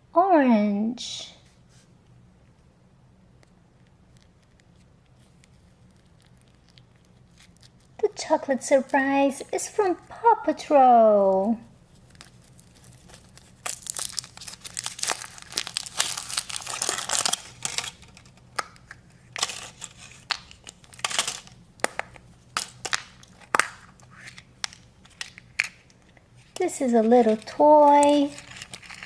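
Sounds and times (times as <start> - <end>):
foil wrapper crinkling and tearing: 11.9 - 29.0.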